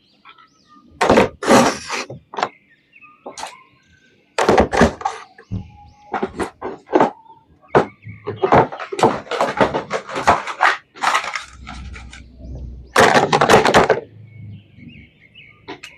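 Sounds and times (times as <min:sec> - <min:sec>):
plastic toys clicking and clacking: 0:04.4 - 0:14.1
packaging rustling: 0:08.8 - 0:12.3.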